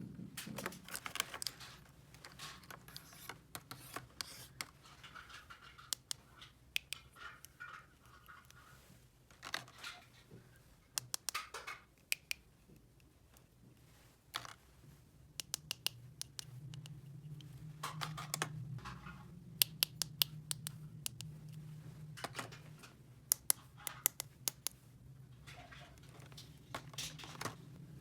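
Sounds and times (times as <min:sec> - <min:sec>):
low steady hum: 0:00.0 - 0:11.0, 0:12.0 - 0:28.0
plastic toy pieces clicking: 0:05.7 - 0:06.2, 0:11.0 - 0:12.4, 0:15.4 - 0:16.5, 0:23.3 - 0:24.8.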